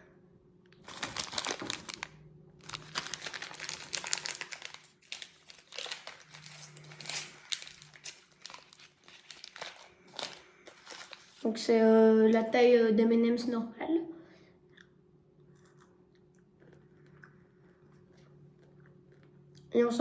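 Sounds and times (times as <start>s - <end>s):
plastic candy wrapper crinkling: 0.8s - 11.4s.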